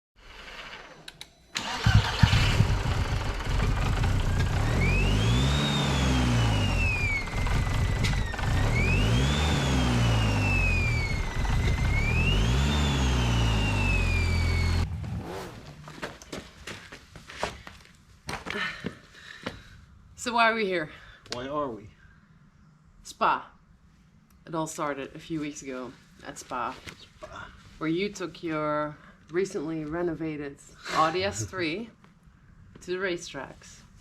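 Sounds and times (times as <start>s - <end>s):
car engine starting and revving: 1.6s - 15.9s.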